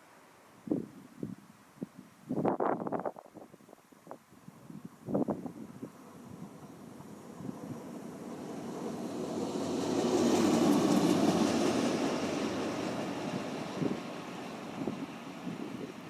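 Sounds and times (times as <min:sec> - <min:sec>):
train passing: 0:05.5 - 0:16.0.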